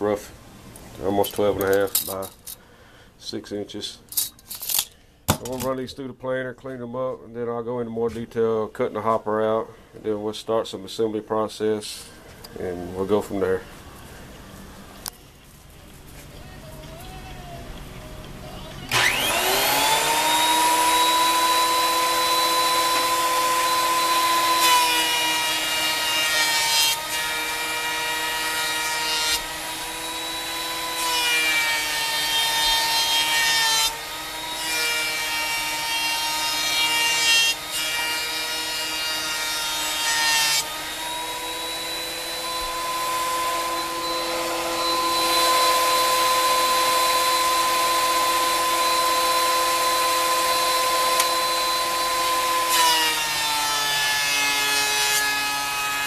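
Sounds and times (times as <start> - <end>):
planer motor whine: 18.8 - 25.9, 40.7 - 53.8
planer cutting wood: 18.9 - 56.0.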